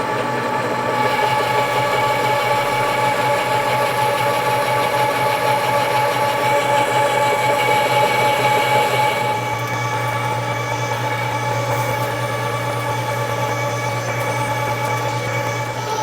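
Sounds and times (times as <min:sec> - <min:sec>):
lathe motor hum: 0:00.0 - 0:16.0
metal lathe gear whine: 0:00.0 - 0:16.0.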